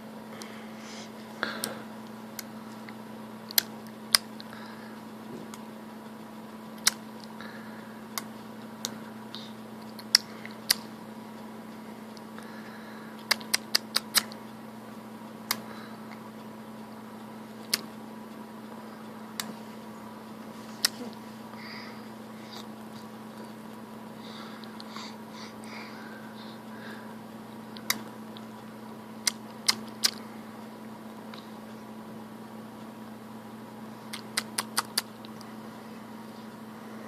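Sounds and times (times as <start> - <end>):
steady low hum: 0.0 - 37.0
baby making tongue clicks: 13.3 - 14.4, 29.2 - 30.2, 34.1 - 35.1.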